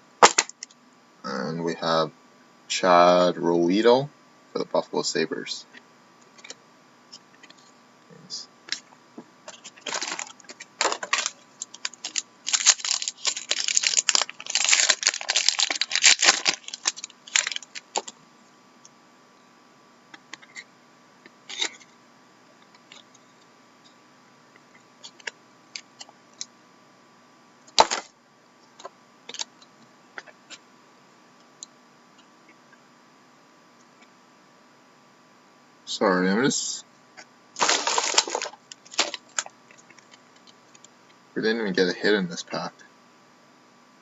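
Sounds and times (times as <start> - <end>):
card wrapper crackling: 9.5 - 18.2, 27.7 - 28.1, 37.6 - 40.1.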